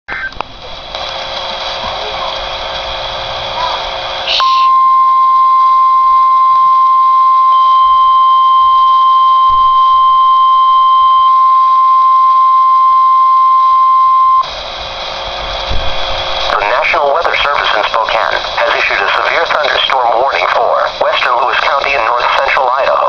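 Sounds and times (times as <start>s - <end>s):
radio hiss: 0.1s - 4.9s, 10.0s - 23.0s
steady alarm tone: 4.2s - 23.0s.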